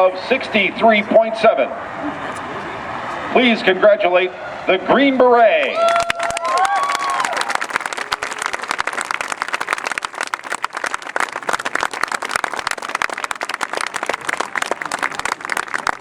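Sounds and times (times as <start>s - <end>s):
crowd applauding: 5.7s - 16.0s.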